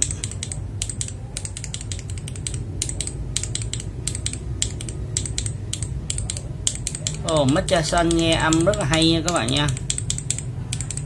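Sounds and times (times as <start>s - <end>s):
mechanical keyboard key clacks: 0.0s - 11.0s
steady low hum: 0.0s - 11.0s.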